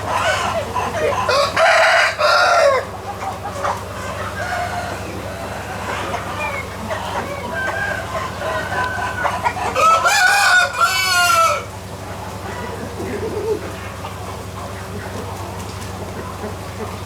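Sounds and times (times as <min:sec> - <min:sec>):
rooster crowing: 0:00.0 - 0:11.8
chickens clucking: 0:00.0 - 0:17.0.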